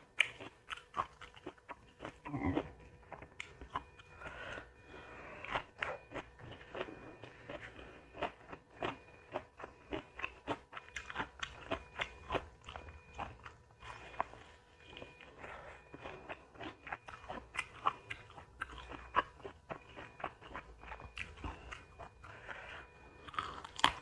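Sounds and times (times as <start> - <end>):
person chewing crunchy food: 0.0 - 24.0.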